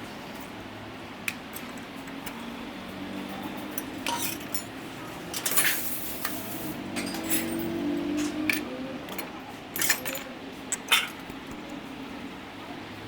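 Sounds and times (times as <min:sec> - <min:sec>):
metal tools and parts clinking: 0:03.7 - 0:04.7, 0:05.3 - 0:11.2.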